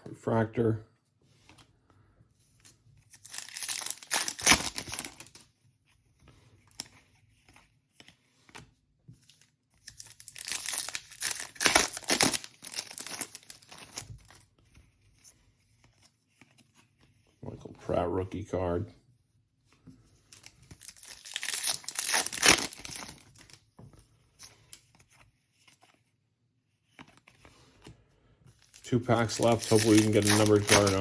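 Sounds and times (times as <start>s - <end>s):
wrapper tearing and crinkling: 3.1s - 5.4s, 9.8s - 14.4s, 20.3s - 23.6s, 28.6s - 31.0s.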